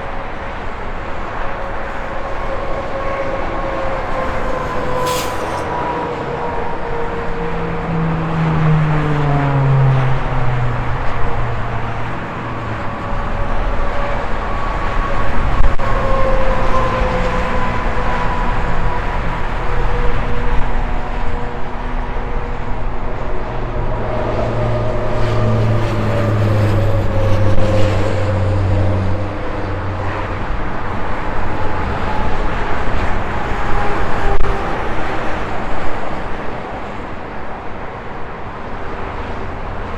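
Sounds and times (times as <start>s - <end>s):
heavy engine drone: 0.0s - 39.9s
vehicles passing by: 0.0s - 39.9s.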